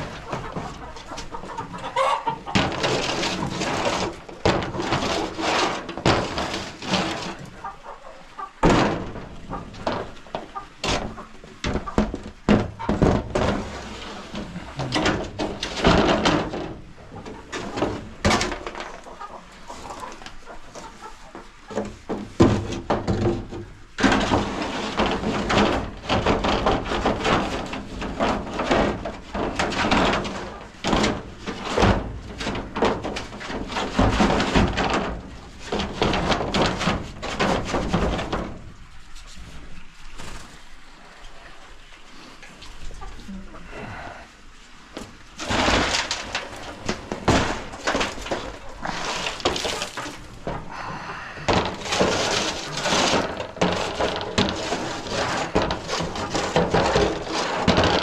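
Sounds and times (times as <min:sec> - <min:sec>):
metal scraper scraping boards: 0:01.3 - 0:07.5, 0:45.4 - 0:50.6, 0:51.4 - 0:58.0
knocks: 0:08.6 - 0:13.8.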